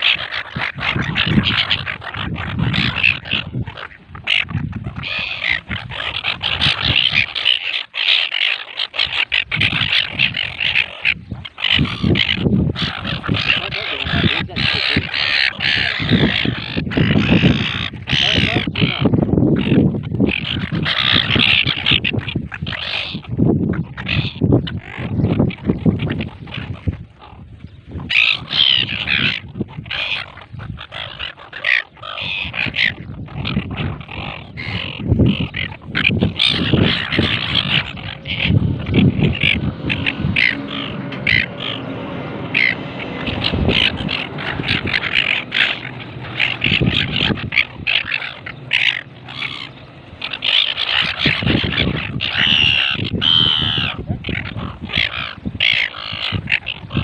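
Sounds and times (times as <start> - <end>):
gulls squawking: 0.0 - 57.0
low rumbling bursts: 33.0 - 57.0.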